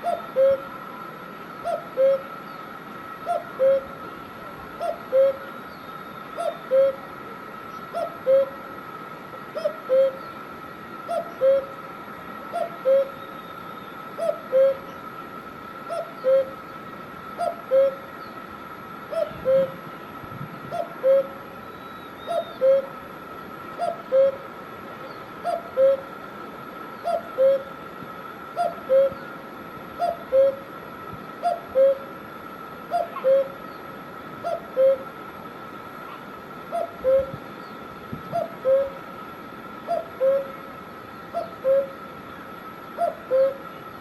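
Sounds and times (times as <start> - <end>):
cuckoo calling: 0.0 - 8.7, 9.5 - 10.4, 11.0 - 11.9, 12.5 - 15.0, 15.8 - 18.4, 19.1 - 20.0, 20.7 - 23.0, 23.7 - 26.2, 27.0 - 27.8, 28.6 - 29.4, 30.0 - 30.7, 31.4 - 32.1, 32.8 - 33.8, 34.4 - 35.1, 36.1 - 39.0, 39.8 - 40.7, 41.3 - 42.1, 43.0 - 43.8
steady high hum: 0.0 - 44.0.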